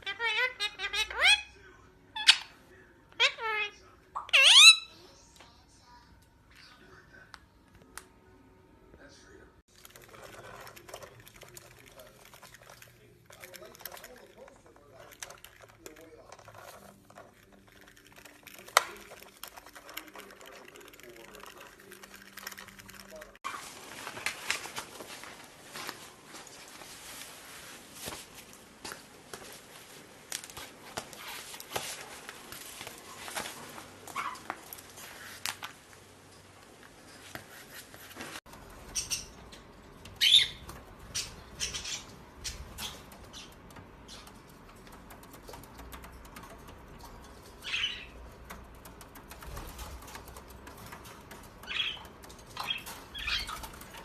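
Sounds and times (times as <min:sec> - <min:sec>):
high-pitched bird calls: 0:38.9 - 0:44.4
clicking and rustling: 0:42.2 - 0:54.0.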